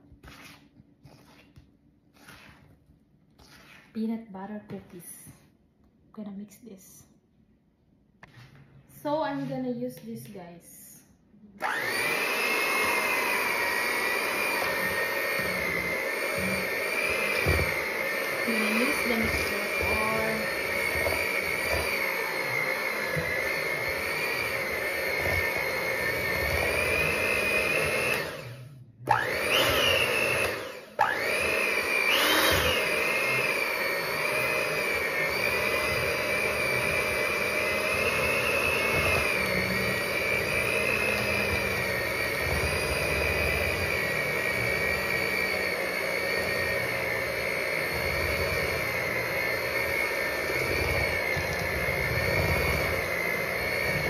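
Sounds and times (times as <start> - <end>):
electric mixer whining: 11.6 - 54.0.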